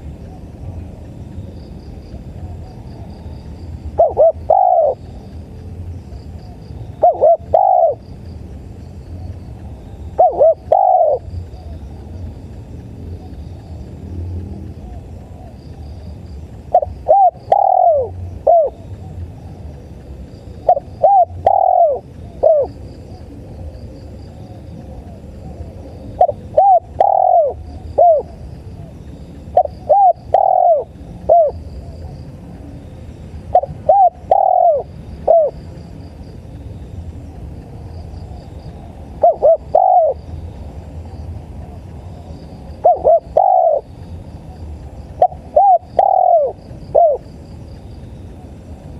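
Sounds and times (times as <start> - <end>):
crickets chirping: 0.0 - 48.9
dove cooing: 2.1 - 5.3, 6.0 - 8.1, 9.2 - 12.1, 14.7 - 35.8, 38.2 - 40.5, 41.6 - 47.4.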